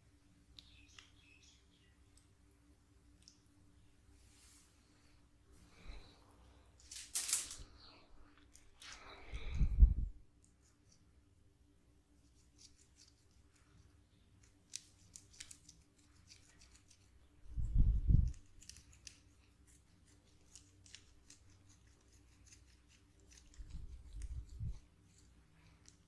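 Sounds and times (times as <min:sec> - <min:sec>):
small sharp clicks and crackles: 0:12.6 - 0:17.1, 0:18.2 - 0:26.0.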